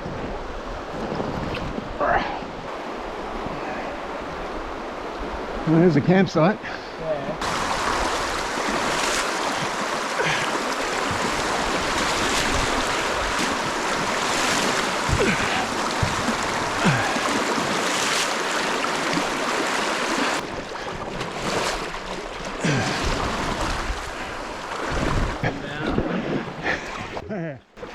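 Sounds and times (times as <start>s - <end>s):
water splashing: 7.3s - 27.2s
river rushing through rapids: 7.4s - 20.4s.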